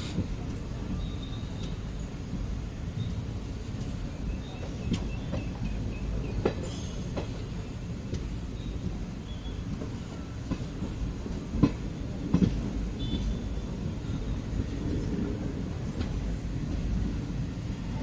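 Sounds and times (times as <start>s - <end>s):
train rumbling: 0.0s - 18.0s
wheels clacking over rail joints: 9.8s - 13.7s.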